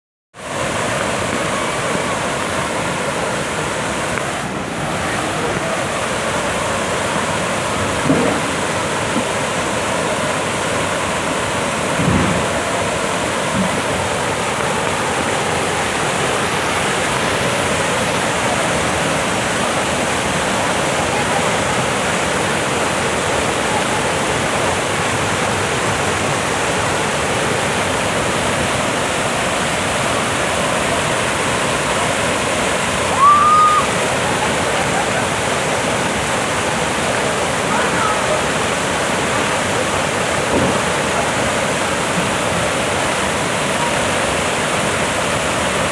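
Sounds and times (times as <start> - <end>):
waterfall roaring: 0.4 - 45.9
low knocks: 8.0 - 9.3, 12.0 - 12.6.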